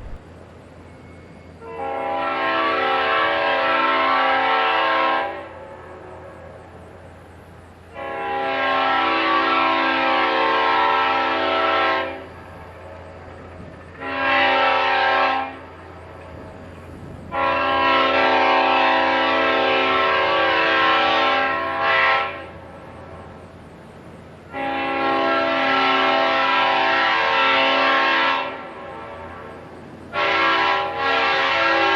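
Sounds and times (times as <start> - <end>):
locomotive air horn blasts: 1.6 - 5.6, 7.9 - 12.3, 14.0 - 15.8, 17.3 - 22.6, 24.5 - 31.9.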